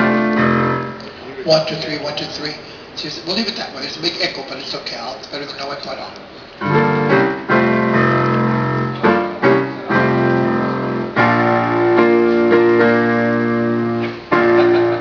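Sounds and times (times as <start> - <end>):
piano keyboard chords with echo: 0.0 - 2.2, 6.5 - 15.0.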